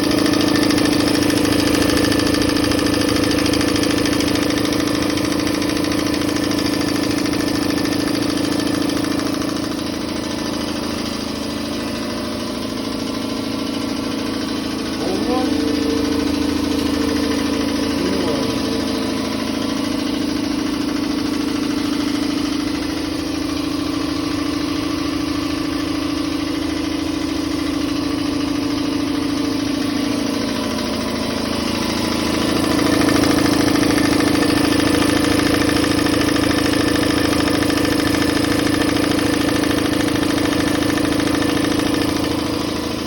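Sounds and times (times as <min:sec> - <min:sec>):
air compressor humming: 0:00.0 - 0:43.0.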